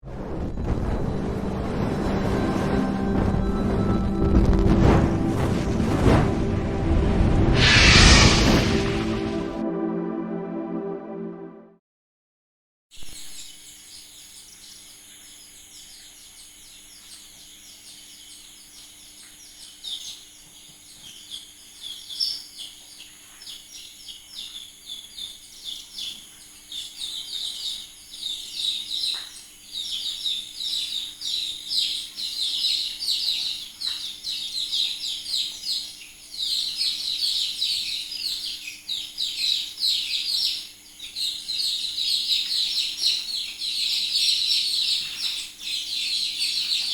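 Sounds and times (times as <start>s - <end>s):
chicks peeping: 13.1s - 46.9s.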